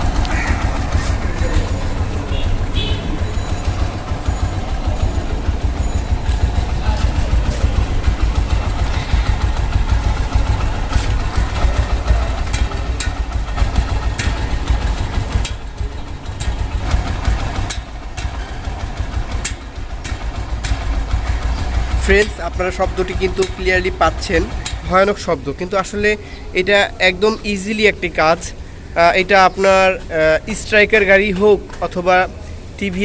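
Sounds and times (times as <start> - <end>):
engine knocking clicks: 0.0 - 26.3
motorcycle engine idling: 0.0 - 33.0.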